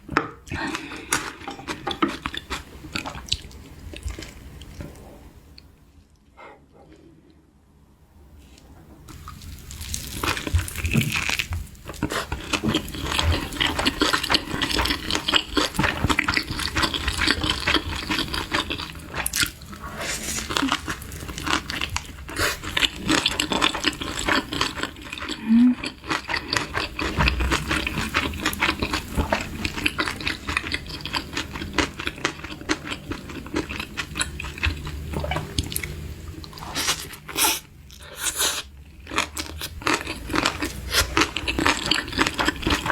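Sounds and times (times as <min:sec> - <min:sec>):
wet slurping and chewing: 0:09.1 - 0:42.9.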